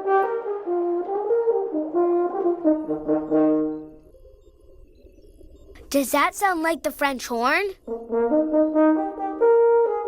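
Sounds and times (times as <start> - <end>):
french horn melody: 7.9 - 10.0.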